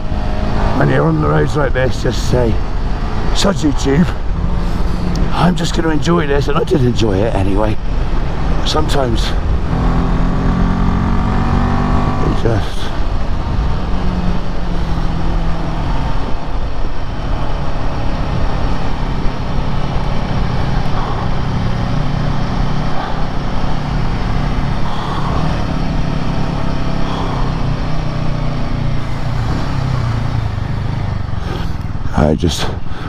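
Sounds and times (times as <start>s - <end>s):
wind and road noise: 0.0s - 33.0s
motorcycle engine running: 7.8s - 32.1s.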